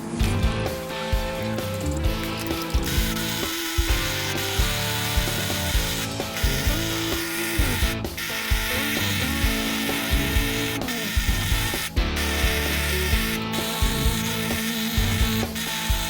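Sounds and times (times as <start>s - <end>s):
background music with steady beat: 0.0s - 16.0s
ratchet wrench clicking: 1.4s - 16.0s.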